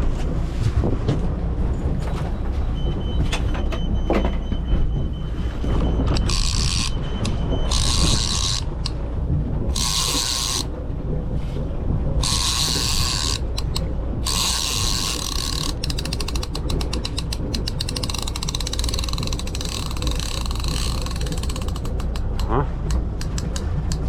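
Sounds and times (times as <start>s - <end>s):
steady low rumble: 0.0s - 24.0s
fishing reel ratcheting: 6.2s - 6.9s, 7.7s - 9.0s, 9.7s - 10.7s, 12.2s - 24.0s.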